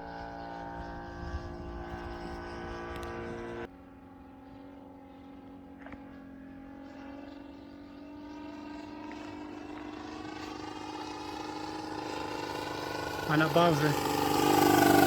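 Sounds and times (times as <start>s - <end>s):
model airplane engine drone: 0.0s - 15.0s.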